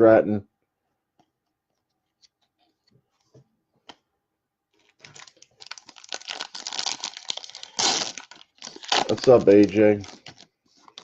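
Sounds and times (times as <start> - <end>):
foil wrapper crinkling and tearing: 4.8 - 11.0.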